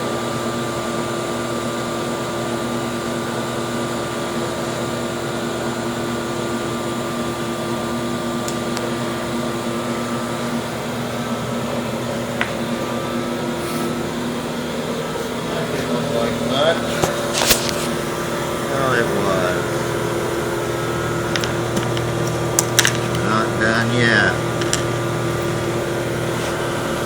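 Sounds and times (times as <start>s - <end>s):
gas burner hissing: 5.6s - 27.0s.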